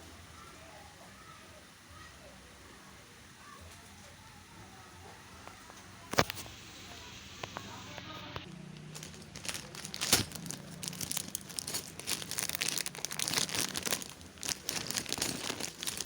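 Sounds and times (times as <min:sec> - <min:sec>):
plastic packaging crinkling: 0:06.0 - 0:16.0.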